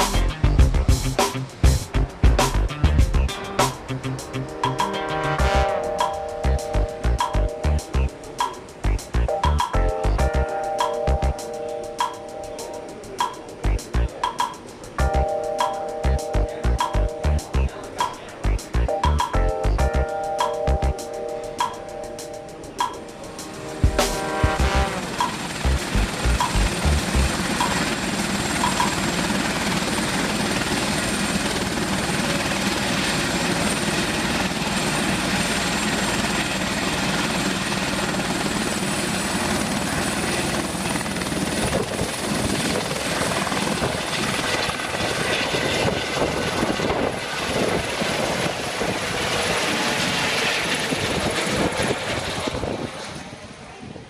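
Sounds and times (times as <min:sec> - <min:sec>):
high whine: 0:00.0 - 0:32.8
helicopter rotor and engine: 0:21.6 - 0:54.0.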